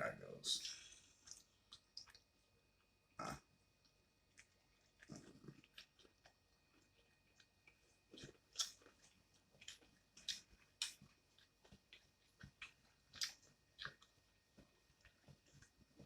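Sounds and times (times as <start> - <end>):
chewing crunchy food: 0.6 - 2.4, 3.2 - 16.0
wet mouth clicks: 8.6 - 8.8.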